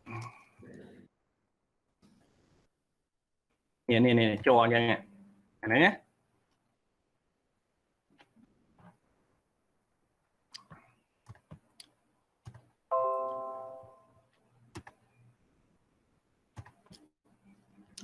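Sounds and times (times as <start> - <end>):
sharp clicks and taps: 10.5 - 12.7.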